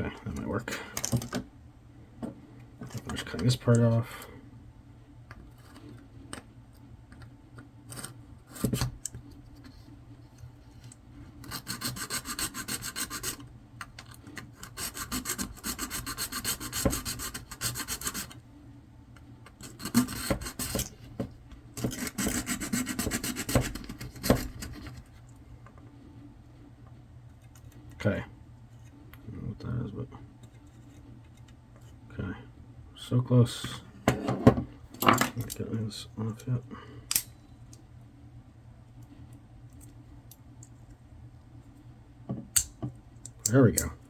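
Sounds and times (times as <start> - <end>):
hand sawing strokes: 11.5 - 13.4, 14.6 - 18.4, 19.6 - 20.8, 21.8 - 24.7.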